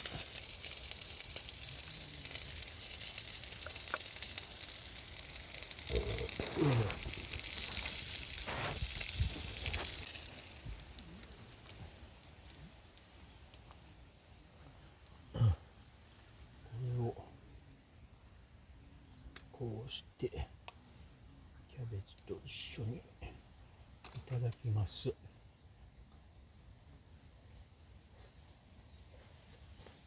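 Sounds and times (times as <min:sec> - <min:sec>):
meat sizzling in a pan: 0:00.0 - 0:11.9.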